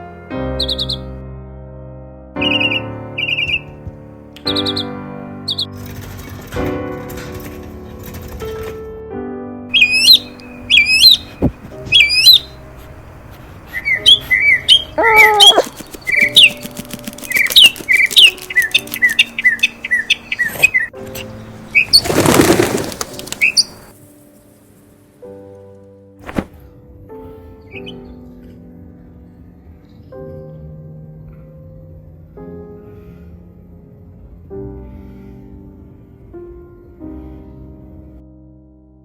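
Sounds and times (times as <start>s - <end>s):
soft background music: 0.0s - 39.0s
small bird chirping and whistling: 0.6s - 1.0s, 2.4s - 3.7s, 9.8s - 12.6s, 13.8s - 20.9s, 23.4s - 23.8s, 27.7s - 28.0s.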